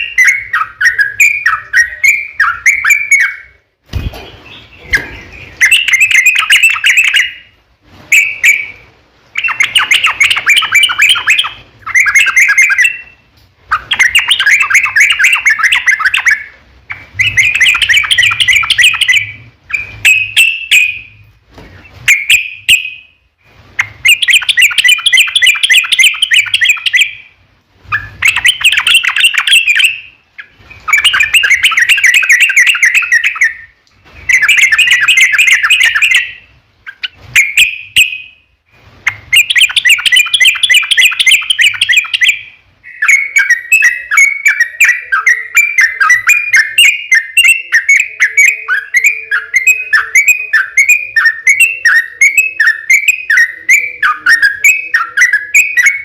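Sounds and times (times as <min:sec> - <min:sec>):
bird singing rapid notes: 0:00.0 - 0:21.2, 0:23.8 - 0:38.4, 0:39.0 - 0:56.0.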